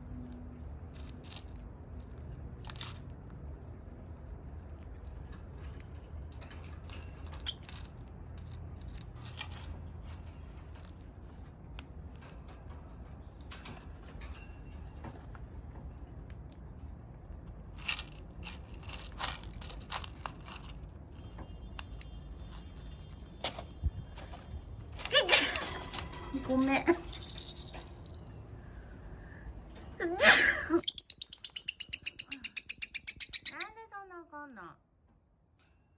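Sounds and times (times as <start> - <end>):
low room hum: 0.0 - 35.9
birds crunching with beaks: 16.2 - 25.9.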